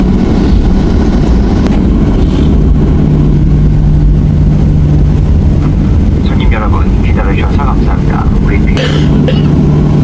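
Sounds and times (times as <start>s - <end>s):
airliner engine and airflow drone: 0.0s - 10.0s
steady hum: 0.0s - 10.0s.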